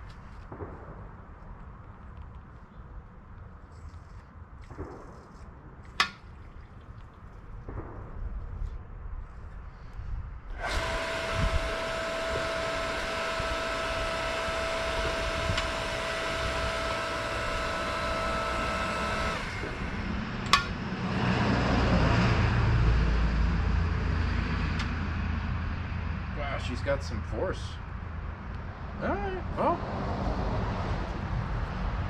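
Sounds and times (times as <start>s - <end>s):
log splitter motor whining: 10.5s - 21.1s.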